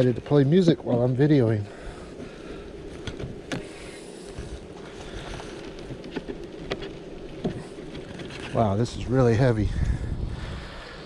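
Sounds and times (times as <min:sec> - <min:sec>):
wooden hive parts clicking: 0:02.1 - 0:09.3.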